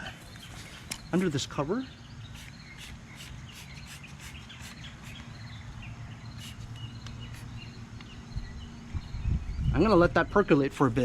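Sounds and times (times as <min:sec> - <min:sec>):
birds chirping: 0:00.0 - 0:11.0
spray bottle squirts: 0:02.4 - 0:05.2, 0:06.4 - 0:07.5.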